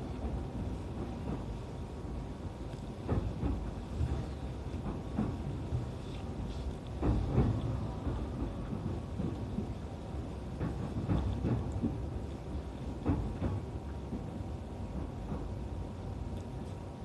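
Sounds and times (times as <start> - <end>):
electric train rumble: 0.0 - 17.0
dull thuds: 3.0 - 14.3.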